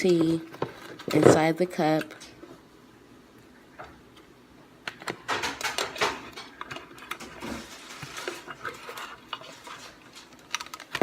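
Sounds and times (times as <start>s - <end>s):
wrapper crinkling: 6.8s - 11.0s.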